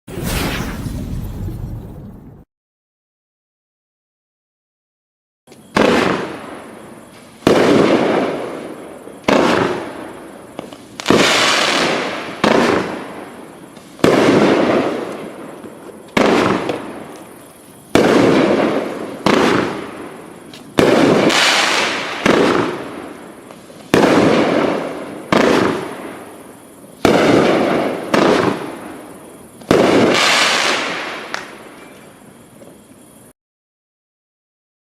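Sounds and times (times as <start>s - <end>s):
firework shots banging: 0.1s - 2.1s.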